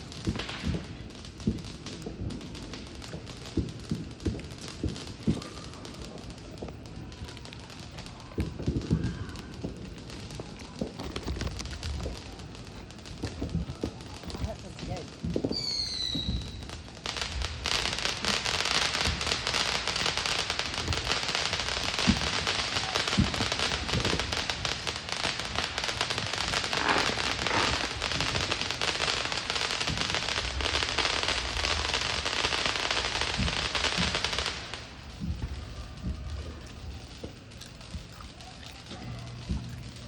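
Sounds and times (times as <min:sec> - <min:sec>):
firework crackling: 0:00.0 - 0:40.0
firework pops: 0:00.0 - 0:40.0
firework whistle: 0:15.4 - 0:16.7, 0:26.2 - 0:31.9.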